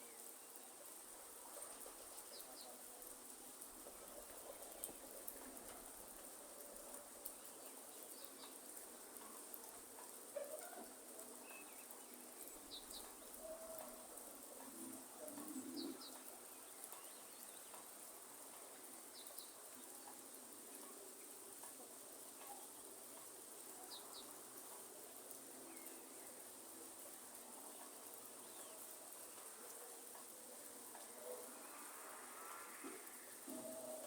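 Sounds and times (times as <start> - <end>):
light rain hiss: 0.0 - 34.0
bird cooing: 14.7 - 16.2, 33.5 - 34.0.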